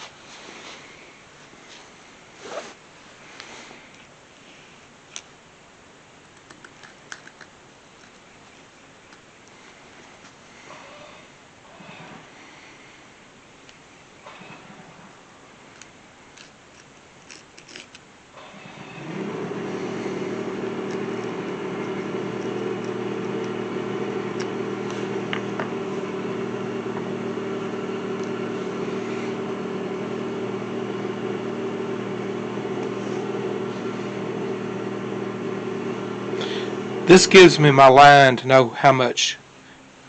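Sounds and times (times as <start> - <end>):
handling clicks: 6.3 - 8.2, 15.7 - 18.1
motor humming: 14.2 - 37.6.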